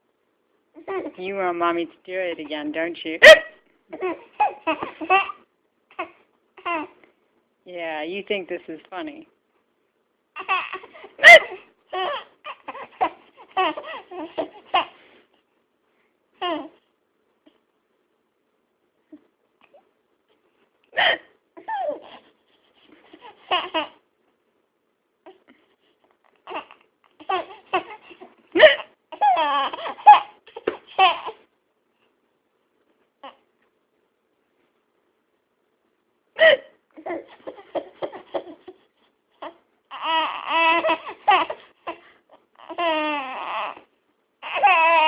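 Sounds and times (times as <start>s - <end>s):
woman hiccuping: 3.2s - 3.6s, 11.2s - 11.6s
baby laughing: 3.2s - 7.0s, 10.4s - 15.0s, 21.0s - 22.3s, 23.0s - 24.0s, 26.4s - 31.4s, 36.4s - 42.0s
baby babbling and squealing: 10.4s - 15.0s, 16.4s - 16.8s, 21.6s - 22.2s, 26.5s - 31.4s, 39.4s - 42.0s, 44.4s - 45.0s.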